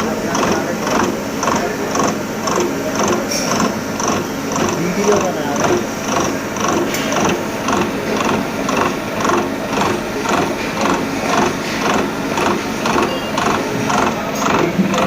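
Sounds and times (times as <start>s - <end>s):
milling machine clattering: 0.0s - 15.0s.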